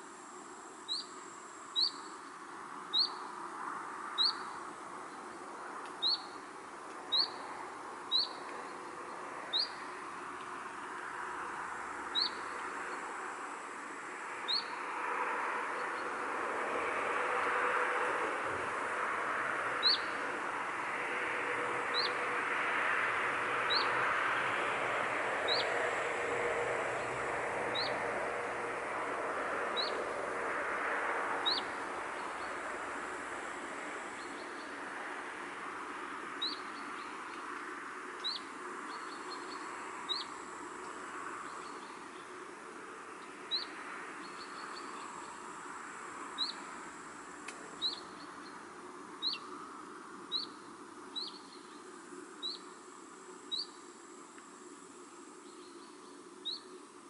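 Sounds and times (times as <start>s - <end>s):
songbird sharp high chirp: 1.8s - 2.1s, 6.0s - 6.4s, 7.1s - 7.4s, 8.1s - 8.4s, 12.2s - 12.4s
outdoor rushing noise: 12.7s - 38.9s.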